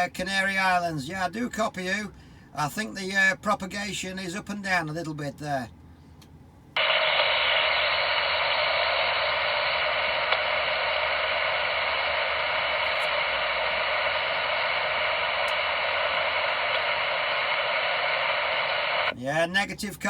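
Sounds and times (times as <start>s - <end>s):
radio static hiss: 6.8s - 19.2s.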